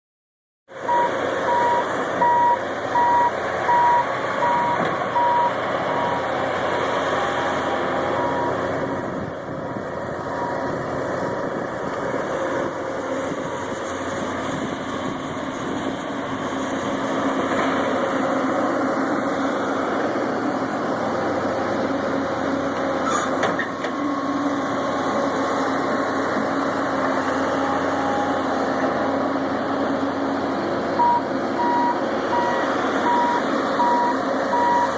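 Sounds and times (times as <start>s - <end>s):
excavator diesel engine running: 0.7s - 34.9s
travel alarm beeping: 0.9s - 6.2s, 31.0s - 34.9s.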